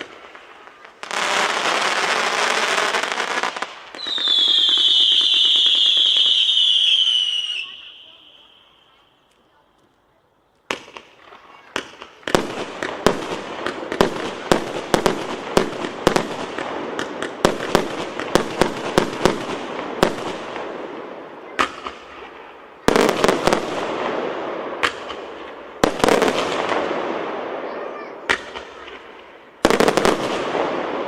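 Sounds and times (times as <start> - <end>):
fireworks bangs: 0.0 - 9.8, 10.6 - 31.0.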